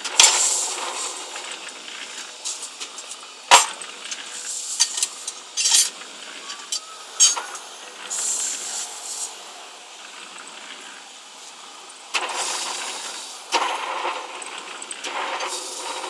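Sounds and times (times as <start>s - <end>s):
short rattle: 2.4s - 7.6s
metal clanking and clinking: 2.5s - 7.6s.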